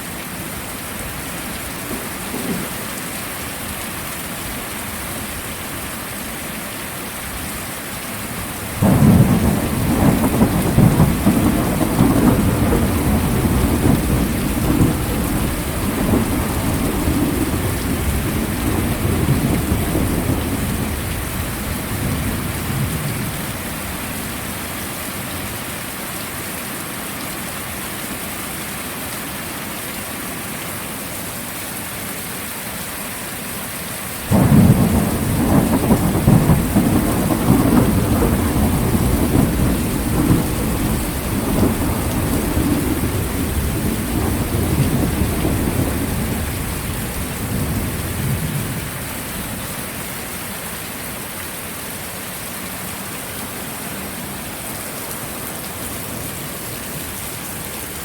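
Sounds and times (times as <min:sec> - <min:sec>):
heavy rain: 0:00.0 - 0:58.0
thunder rumbling: 0:01.7 - 0:03.4, 0:08.7 - 0:23.5, 0:34.3 - 0:49.6.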